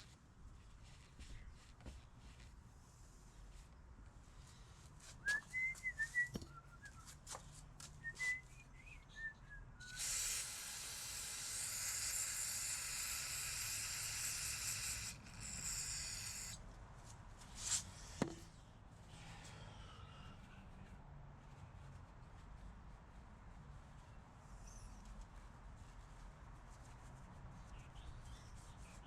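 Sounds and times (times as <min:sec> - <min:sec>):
faint wavering whistle: 0:05.2 - 0:07.2, 0:08.0 - 0:10.0
aerosol can spraying hiss: 0:09.9 - 0:16.6.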